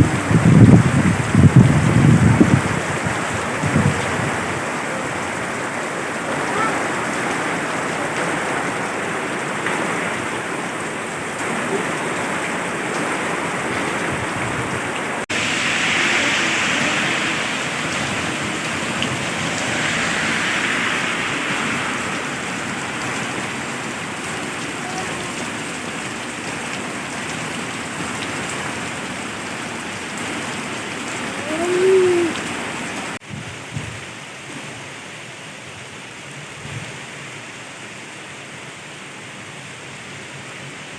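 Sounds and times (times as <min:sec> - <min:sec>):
heavy rain falling: 0:00.0 - 0:40.9
short rising-and-falling tone: 0:18.6 - 0:23.9.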